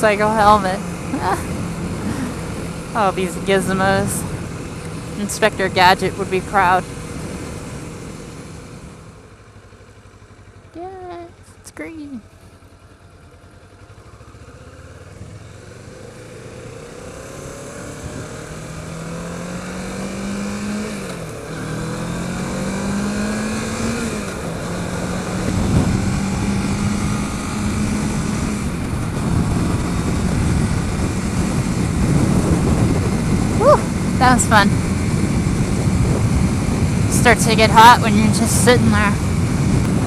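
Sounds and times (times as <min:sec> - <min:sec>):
motorcycle engine accelerating: 0:00.0 - 0:40.0
wind noise: 0:24.7 - 0:40.0.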